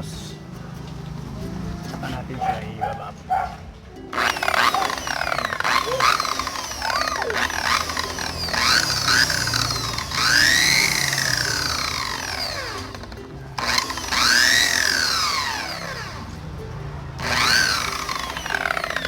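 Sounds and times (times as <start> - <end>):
electric polisher motor whining: 4.2 - 16.5, 17.1 - 19.0.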